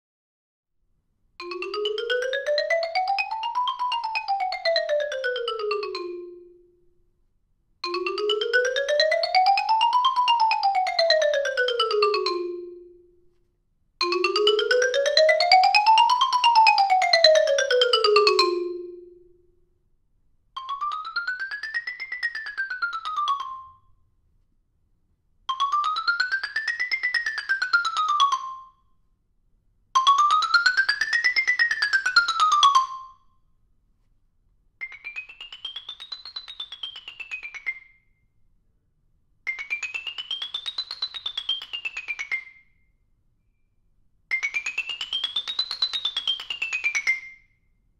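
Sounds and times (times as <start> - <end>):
xylophone scales: 1.4 - 6.7, 7.8 - 13.1, 14.0 - 19.3.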